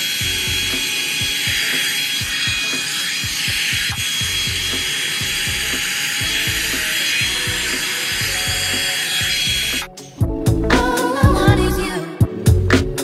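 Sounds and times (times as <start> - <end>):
hot air brush running: 0.0 - 10.0
background music with a beat: 0.0 - 13.0.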